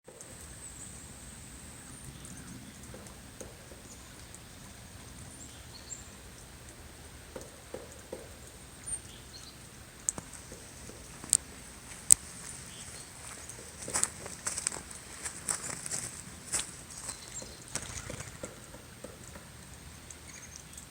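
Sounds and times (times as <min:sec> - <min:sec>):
sharp clicks: 0:10.0 - 0:12.3.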